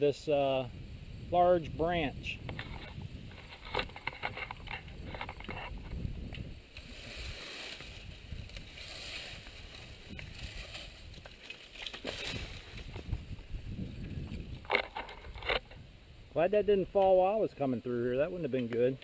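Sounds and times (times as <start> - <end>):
branch scraping over pavement: 2.6 - 6.0, 6.7 - 15.7.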